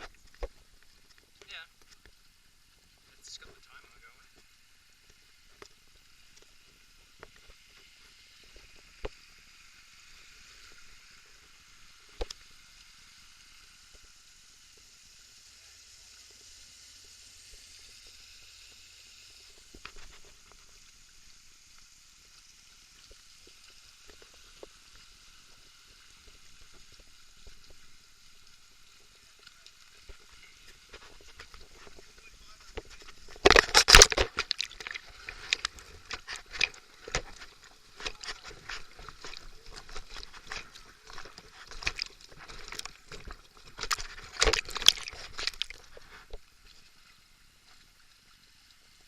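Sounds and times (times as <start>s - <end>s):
river water rushing: 43.8s - 45.9s.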